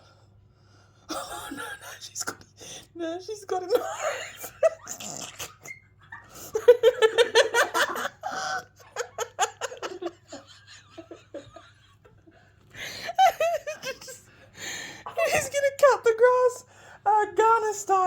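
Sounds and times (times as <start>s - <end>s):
person laughing hard: 3.8s - 14.2s.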